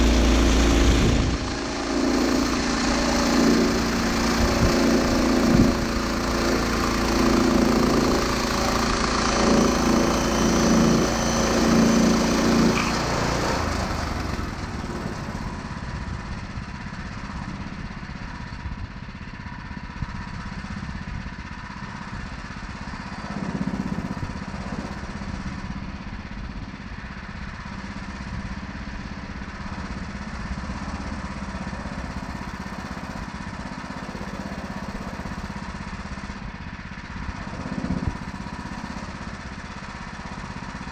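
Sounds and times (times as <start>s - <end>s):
band saw cutting log: 0.0s - 15.8s
small gasoline engine running: 0.0s - 40.9s.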